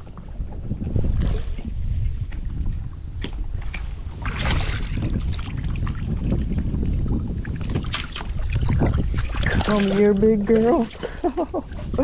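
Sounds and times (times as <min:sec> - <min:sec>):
wind rumbling on microphone: 0:00.0 - 0:12.0
fish splashing in water: 0:07.5 - 0:12.0.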